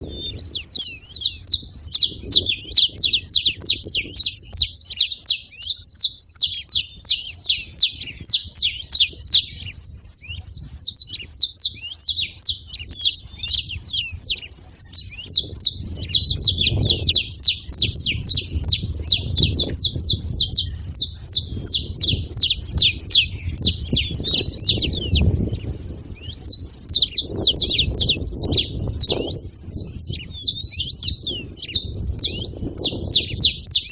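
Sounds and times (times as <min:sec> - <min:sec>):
flock of finches chirping: 0:00.0 - 0:33.9.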